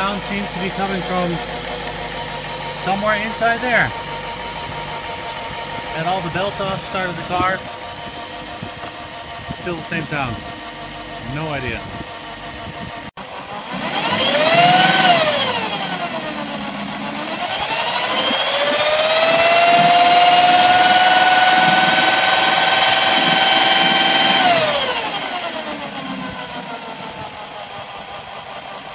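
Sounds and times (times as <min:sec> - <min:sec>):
car engine revving: 0:00.0 - 0:28.9.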